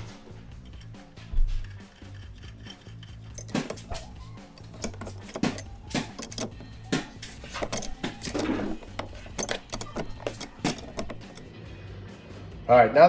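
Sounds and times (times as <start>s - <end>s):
metal hardware clinking: 3.3s - 11.5s
scraping rattle: 3.3s - 11.5s.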